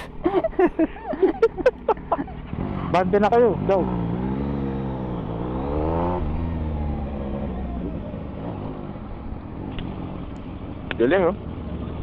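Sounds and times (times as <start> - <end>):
motorcycle engine accelerating: 1.3 - 12.0.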